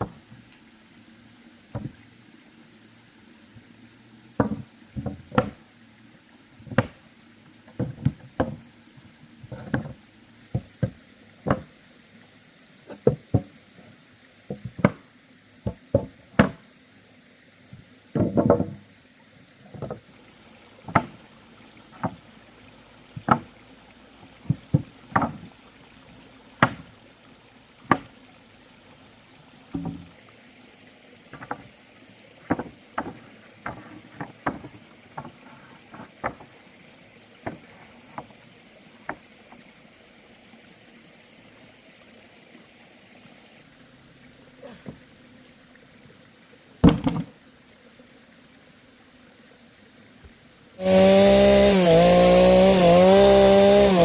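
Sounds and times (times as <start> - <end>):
sharp knocks: 29.8 - 30.1, 46.8 - 47.3
high-pitched insect drone: 50.8 - 54.0.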